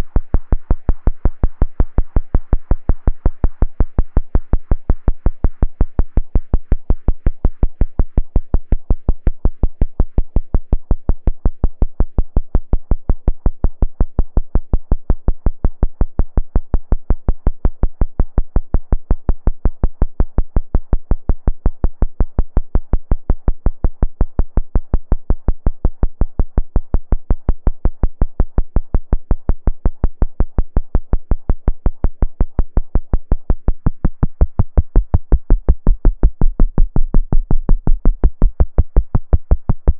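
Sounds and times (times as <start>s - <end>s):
analog synthesizer bass notes: 20.4s - 39.9s.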